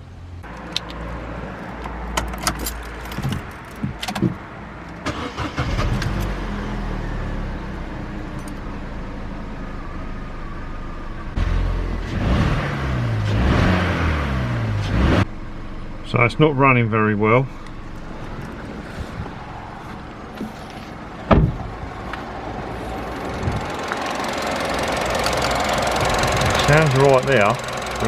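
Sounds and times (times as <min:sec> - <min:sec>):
car engine running roughly: 0:22.7 - 0:28.0.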